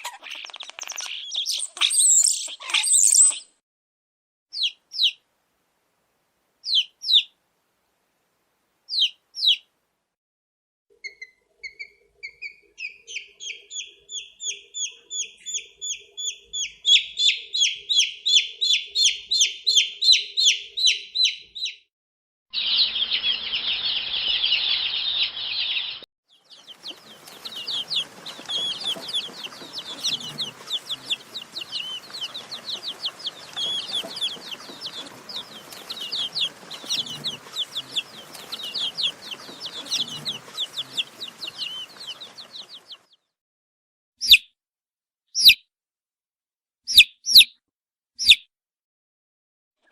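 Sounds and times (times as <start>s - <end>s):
baby chicks peeping: 0.0s - 3.5s, 4.5s - 5.2s, 6.6s - 7.3s, 8.9s - 9.7s, 11.0s - 21.8s, 22.6s - 43.3s, 45.4s - 45.6s, 46.9s - 47.6s, 48.2s - 48.4s
chorus of chicks chirping: 0.0s - 3.6s, 4.6s - 5.2s, 6.6s - 7.3s, 8.9s - 9.6s, 11.0s - 21.8s, 22.5s - 43.3s, 45.4s - 45.6s, 46.9s - 47.5s.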